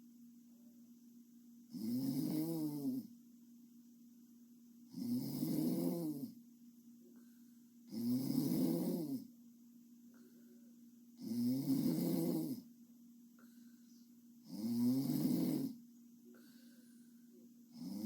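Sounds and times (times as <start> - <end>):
faint steady hum: 0.0 - 18.0
woman snoring: 1.7 - 3.1, 4.9 - 6.4, 7.9 - 9.3, 11.2 - 12.7, 14.4 - 15.8, 17.7 - 18.0.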